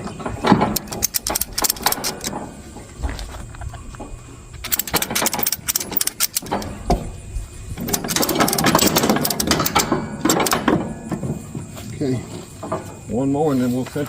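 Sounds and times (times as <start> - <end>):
engine rumbling: 0.0 - 14.0
ratchet strap clicking: 0.8 - 2.3, 4.6 - 6.7, 7.8 - 10.7.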